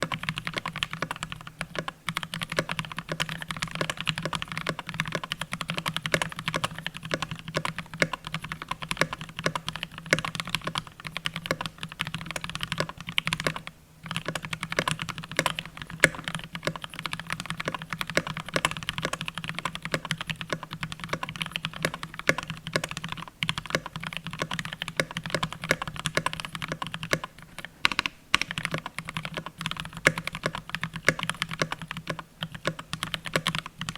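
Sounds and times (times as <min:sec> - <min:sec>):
fast mechanical keyboard typing: 0:00.0 - 0:33.9.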